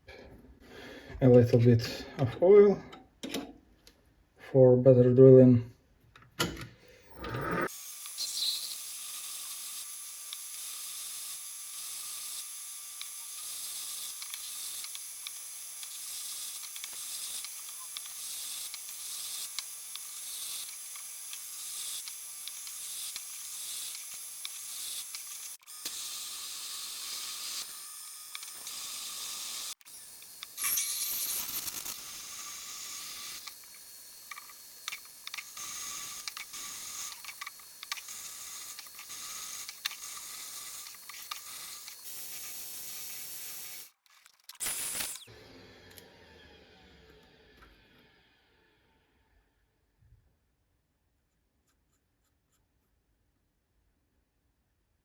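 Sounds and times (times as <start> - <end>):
drill bit cutting metal hiss: 7.1 - 44.0, 44.6 - 45.3.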